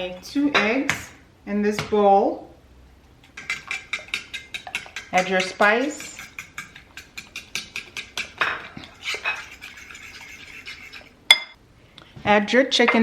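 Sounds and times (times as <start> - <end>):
utensil beating eggs in a bowl: 3.1 - 11.3
utensil clinking on bowl: 3.2 - 11.6.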